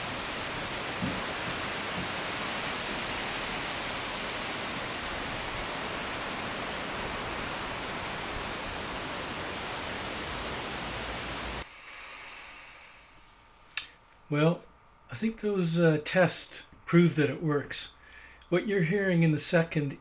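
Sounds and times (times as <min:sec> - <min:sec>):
wind in trees: 0:00.0 - 0:14.4.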